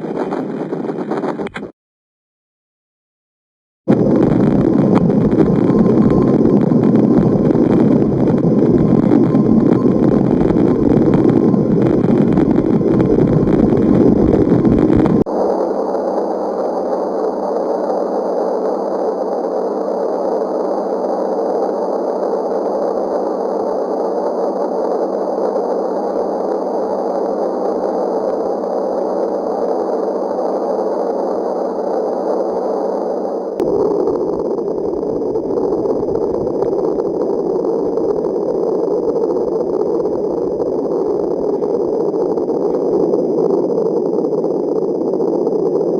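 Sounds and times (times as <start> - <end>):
rumbling drone: 3.9 - 45.9
thin steady drone: 3.9 - 45.9.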